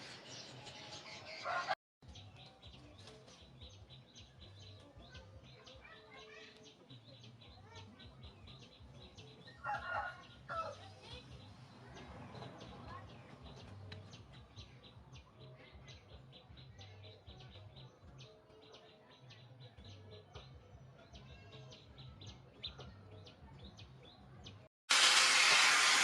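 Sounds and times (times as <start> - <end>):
small birds chirping: 0.0 - 24.7
loud hissing rush: 24.9 - 26.0.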